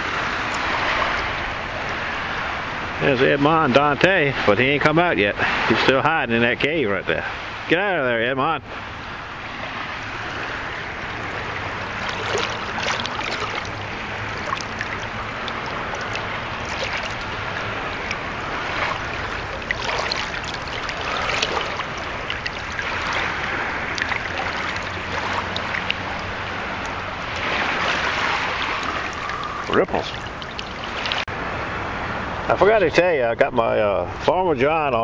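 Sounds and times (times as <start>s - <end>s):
small waves lapping: 0.0s - 32.5s
water sloshing around wading feet: 9.4s - 31.3s.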